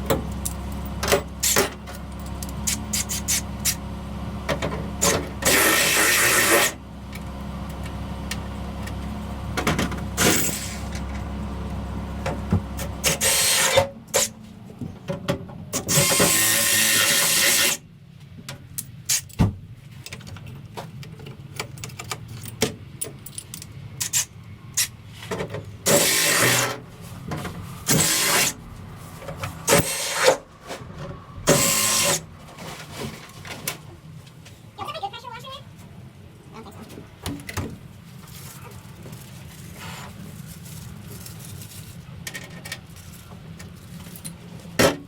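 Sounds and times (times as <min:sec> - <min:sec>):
power tool bursts: 0:05.0 - 0:06.8, 0:10.2 - 0:10.9, 0:13.0 - 0:14.3, 0:15.8 - 0:17.8, 0:25.8 - 0:26.8, 0:27.9 - 0:28.6, 0:29.7 - 0:30.4, 0:31.5 - 0:32.3.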